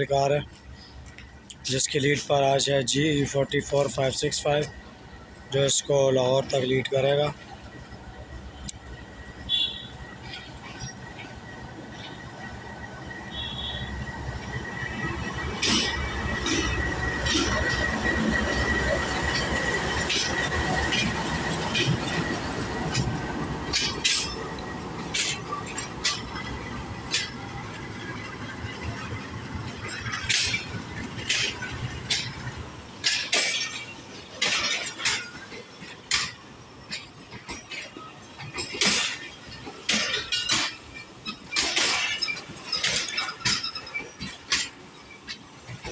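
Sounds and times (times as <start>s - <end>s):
thin squeal of train: 0.0s - 45.9s
train rumbling: 0.0s - 45.9s
metallic clanks and clinks: 14.3s - 45.9s.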